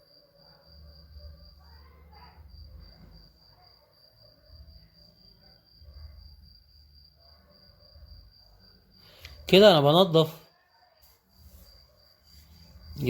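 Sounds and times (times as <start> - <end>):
cricket trilling: 0.0 - 13.0.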